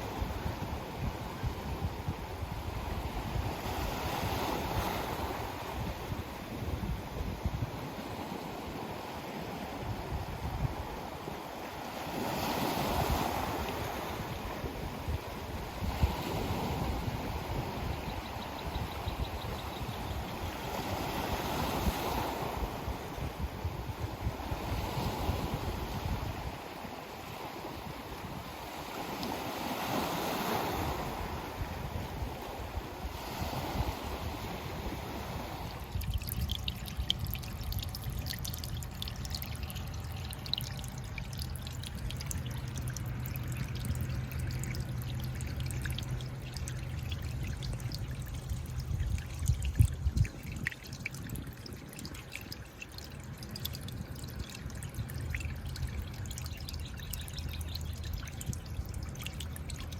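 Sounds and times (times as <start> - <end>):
low rumble of surf: 0.0 - 59.9
water trickling and dripping: 11.8 - 23.4, 35.6 - 59.9
water splash: 35.4 - 56.2.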